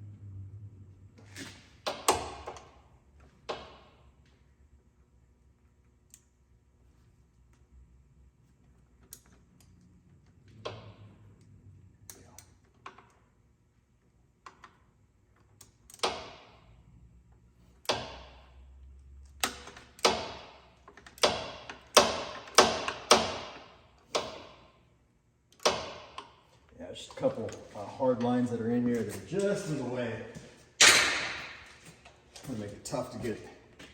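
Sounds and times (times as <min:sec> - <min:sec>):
hammer striking a wrench: 0:21.2 - 0:24.5.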